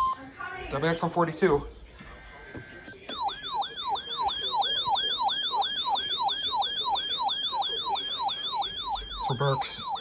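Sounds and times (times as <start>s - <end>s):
electronic siren yelping: 3.1s - 10.0s.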